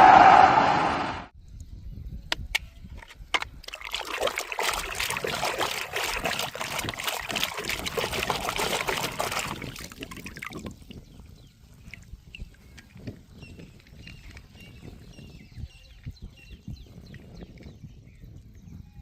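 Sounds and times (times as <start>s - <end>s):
water pouring and trickling: 3.0s - 15.0s.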